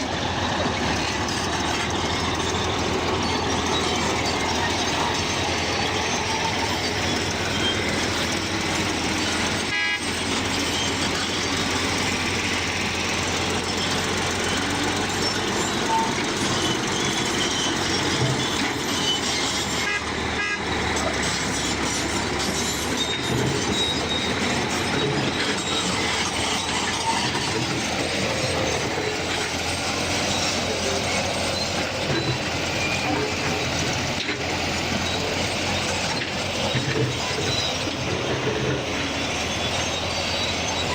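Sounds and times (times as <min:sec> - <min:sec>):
bulldozer running: 0:00.0 - 0:40.9.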